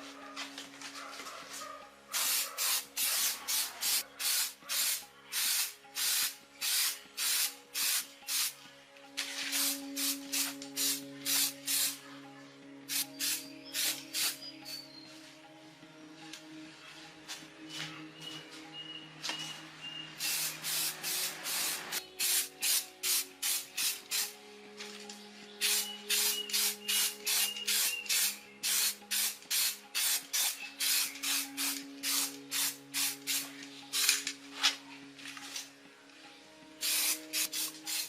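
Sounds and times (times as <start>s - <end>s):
rhythmic abrasive hand strokes: 0.0s - 12.0s.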